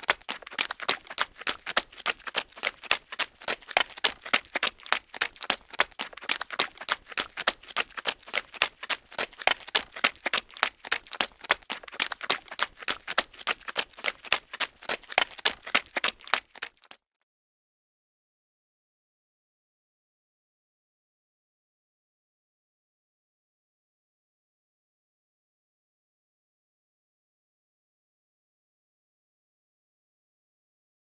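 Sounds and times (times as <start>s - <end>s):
running footsteps in mud: 0.0s - 17.0s.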